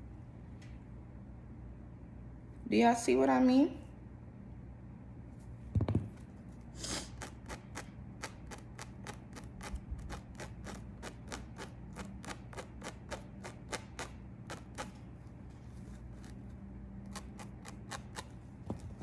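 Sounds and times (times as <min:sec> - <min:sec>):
faint steady hum: 0:00.0 - 0:19.0.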